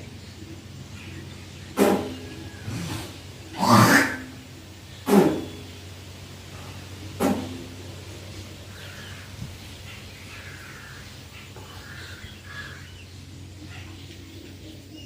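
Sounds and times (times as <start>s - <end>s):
steady low hum: 0.0s - 15.0s
crows cawing: 1.8s - 5.6s, 8.6s - 14.0s.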